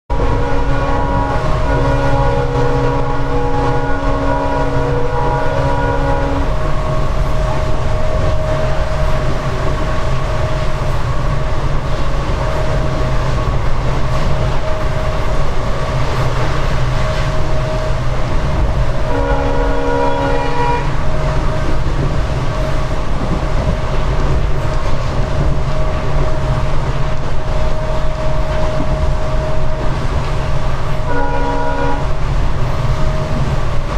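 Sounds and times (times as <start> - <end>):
locomotive horn chord: 0.1 - 8.7, 18.9 - 21.6, 31.0 - 32.2
diesel locomotive engine humming: 0.1 - 33.9
rail rumble: 0.1 - 33.9.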